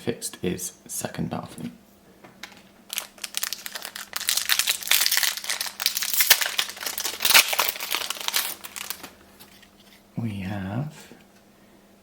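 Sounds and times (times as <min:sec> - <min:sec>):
wrapper crinkling and crackling: 0:02.4 - 0:09.7.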